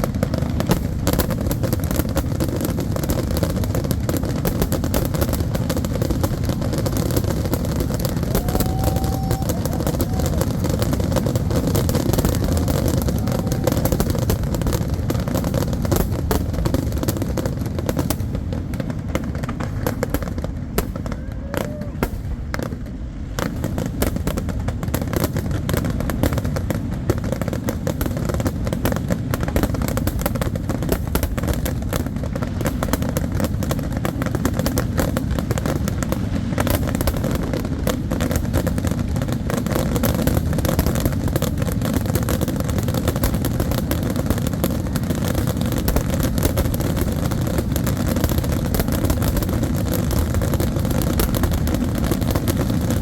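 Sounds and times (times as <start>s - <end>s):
fireworks booming and crackling: 0.0s - 53.0s.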